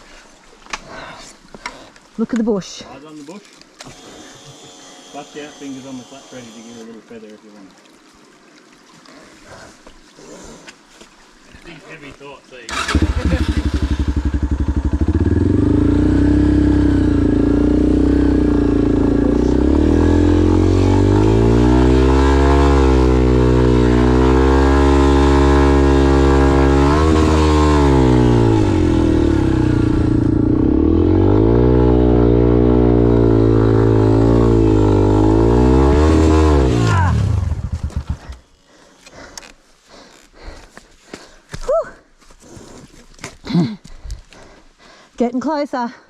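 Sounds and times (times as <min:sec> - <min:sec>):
motorcycle engine revving: 0:12.7 - 0:38.5.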